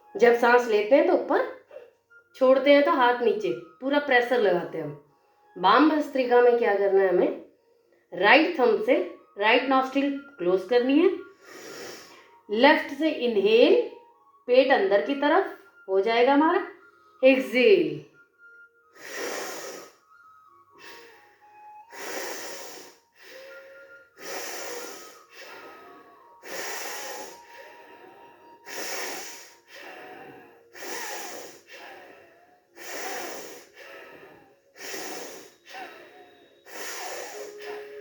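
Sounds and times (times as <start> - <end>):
soft background music: 0.0 - 38.0
forceful nostril breathing: 11.2 - 12.4, 18.9 - 38.0.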